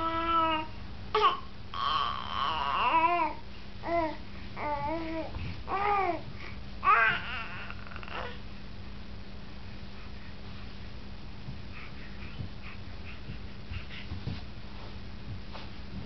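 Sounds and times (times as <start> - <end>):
baby babbling: 0.0 - 6.2, 6.8 - 8.4.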